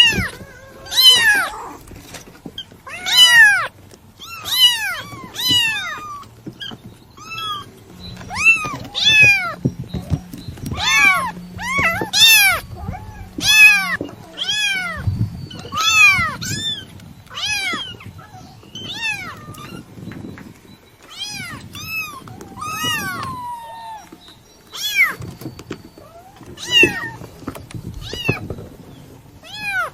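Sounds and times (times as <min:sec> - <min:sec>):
kitten meowing: 0:00.0 - 0:01.8, 0:02.9 - 0:09.6, 0:10.7 - 0:19.9, 0:21.1 - 0:25.2, 0:26.1 - 0:27.3, 0:29.4 - 0:29.9.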